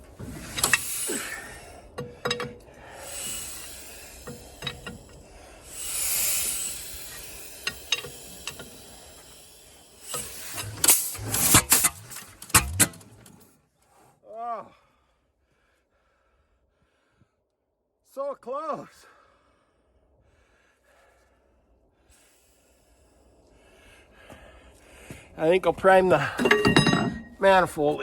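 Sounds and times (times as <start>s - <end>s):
engine turned over by hand clanking: 0.0s - 13.5s
rasping hisses: 0.1s - 12.9s.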